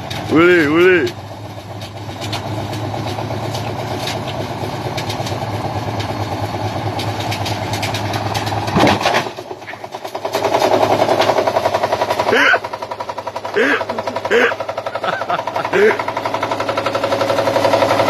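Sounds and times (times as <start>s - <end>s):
fast pulsing rattle: 9.5s - 18.0s
washing machine running: 9.8s - 18.0s.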